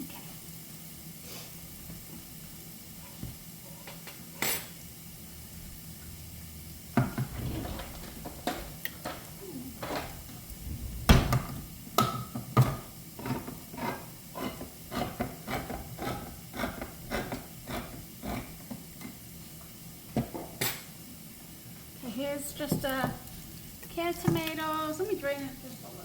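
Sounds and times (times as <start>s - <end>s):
utensils and cookware clattering: 3.8s - 4.8s.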